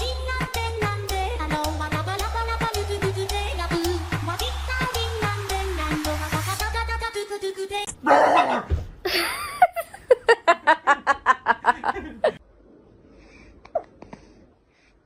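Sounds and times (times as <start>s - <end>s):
person laughing hard: 9.1s - 12.4s.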